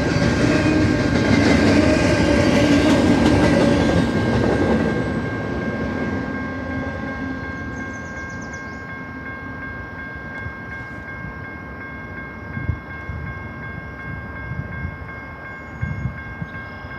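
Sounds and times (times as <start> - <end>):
freight train rumble: 0.0 - 16.9.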